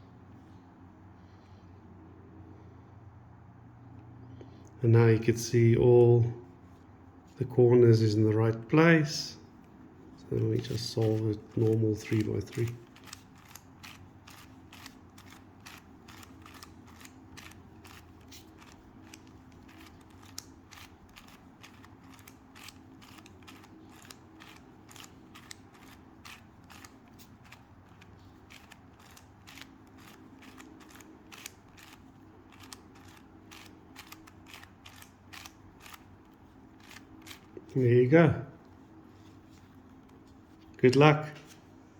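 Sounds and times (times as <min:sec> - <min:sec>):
puzzle cube plastic clicks: 0:10.5 - 0:37.7.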